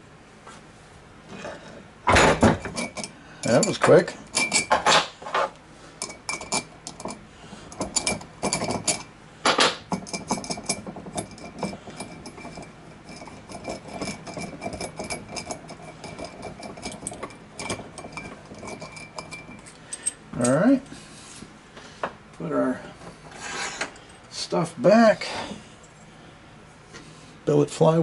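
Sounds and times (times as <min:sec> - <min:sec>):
metal tools clinking and clattering: 0:02.1 - 0:05.1, 0:06.0 - 0:09.1, 0:09.9 - 0:20.6.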